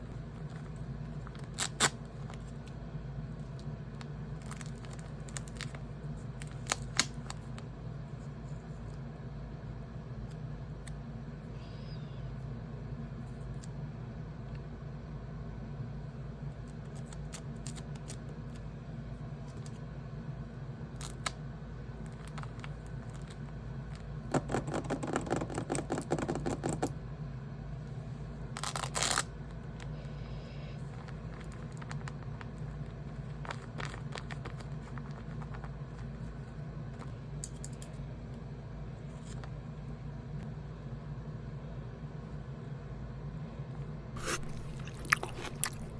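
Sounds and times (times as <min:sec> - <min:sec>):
paper crinkling and crackling: 0:00.1 - 0:02.8, 0:03.4 - 0:08.9, 0:22.1 - 0:25.9, 0:30.8 - 0:36.4, 0:44.2 - 0:45.9
low hum: 0:44.2 - 0:45.9.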